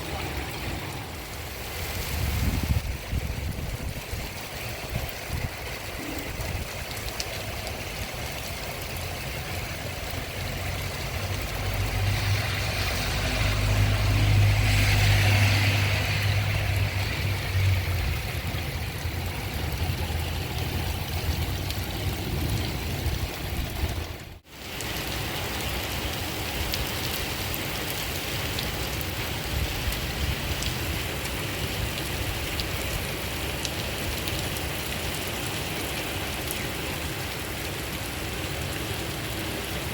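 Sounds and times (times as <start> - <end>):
steady rain falling: 0.0 - 39.9
passing vehicle engine hum: 10.3 - 22.8.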